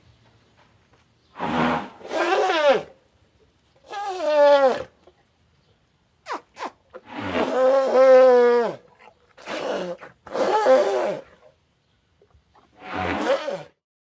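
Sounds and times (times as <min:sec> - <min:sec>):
animal calling: 0:01.4 - 0:03.0, 0:06.2 - 0:11.5, 0:12.6 - 0:13.8.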